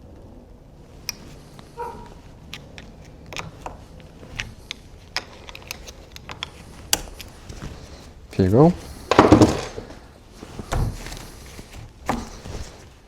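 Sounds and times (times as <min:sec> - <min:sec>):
sharp metal clicks and taps: 0:04.4 - 0:07.3.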